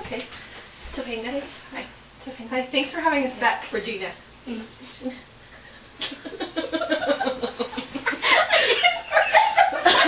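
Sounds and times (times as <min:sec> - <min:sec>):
women laughing: 0:06.0 - 0:10.0.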